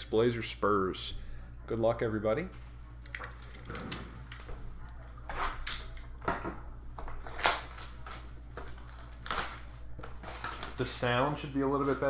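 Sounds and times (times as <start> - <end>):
low electrical hum: 0.0 - 12.0
card packaging crinkling and rustling: 7.1 - 12.0.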